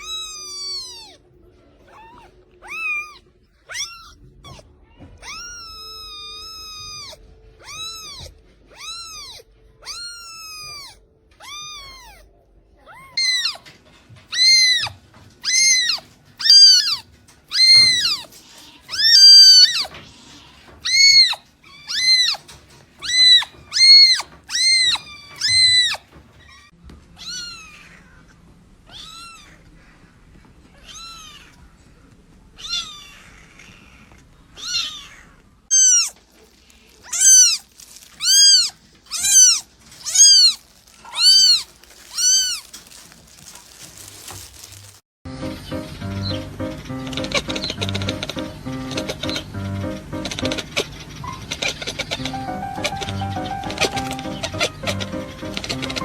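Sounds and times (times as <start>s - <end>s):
kitten meowing: 0.0s - 1.2s, 1.9s - 13.7s, 14.3s - 20.0s, 20.8s - 22.4s, 23.0s - 28.2s, 28.9s - 29.6s, 30.8s - 31.6s, 32.6s - 36.2s, 37.0s - 43.0s, 50.4s - 56.0s.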